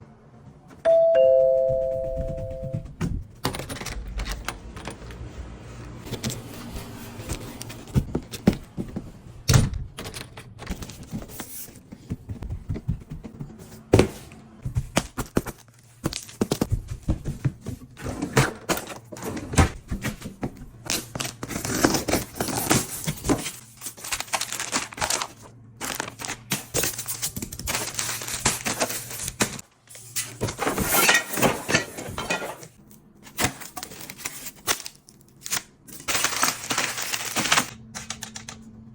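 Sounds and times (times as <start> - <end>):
packaging clicks and knocks: 12.0 - 29.6
plastic or paper crinkling: 20.9 - 30.9, 33.3 - 37.8.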